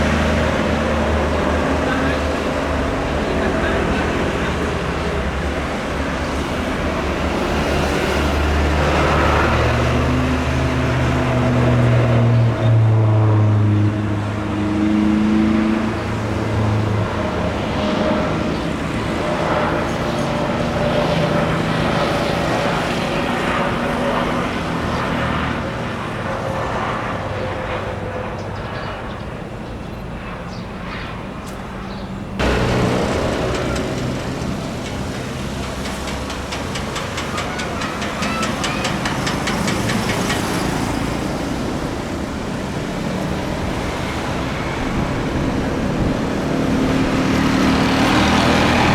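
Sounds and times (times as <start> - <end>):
engines droning: 0.0 - 48.9.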